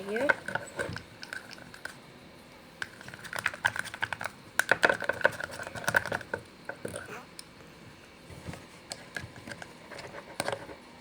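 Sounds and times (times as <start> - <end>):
sticky clicking of slime stirring: 2.8 - 7.5.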